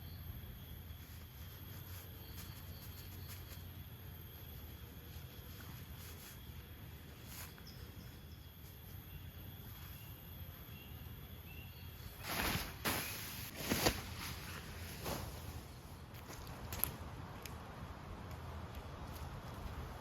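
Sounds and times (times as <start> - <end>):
faint insect chirps: 0.0 - 16.1
rustling crunching handling noises: 12.2 - 17.0.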